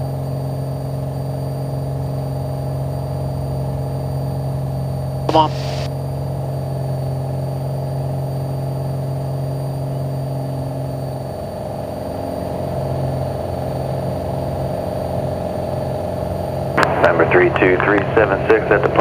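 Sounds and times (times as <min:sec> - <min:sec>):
plane engine idling: 0:00.9 - 0:19.0.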